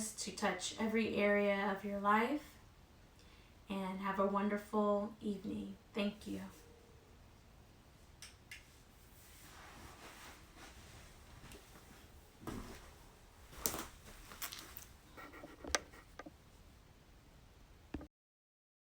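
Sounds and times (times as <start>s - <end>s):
faint handling rustles: 8.7s - 16.6s.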